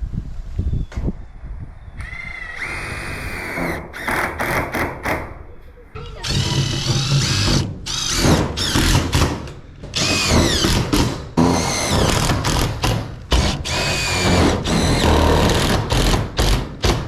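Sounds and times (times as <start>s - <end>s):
power drill running: 2.0s - 4.6s, 6.2s - 9.2s, 9.9s - 16.2s.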